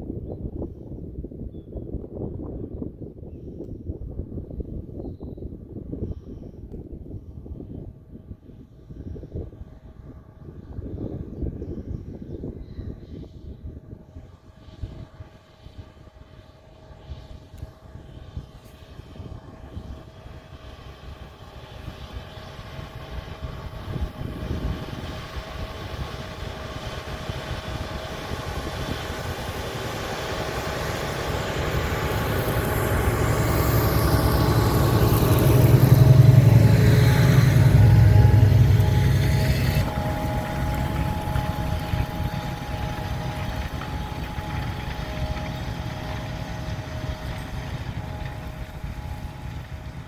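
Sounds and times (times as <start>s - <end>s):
wind buffeting microphone: 0.0s - 50.0s
tractor engine pulling a plough: 15.2s - 50.0s.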